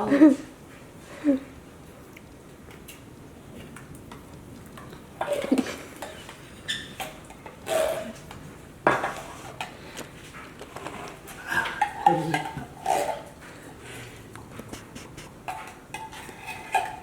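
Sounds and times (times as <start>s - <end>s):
spoon clinking against dishes: 11.6s - 13.3s, 15.4s - 17.0s.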